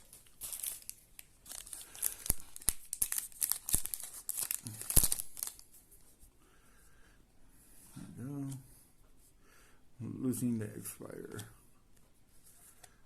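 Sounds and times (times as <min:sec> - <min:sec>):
wrapper tearing and crinkling: 0:00.0 - 0:05.7.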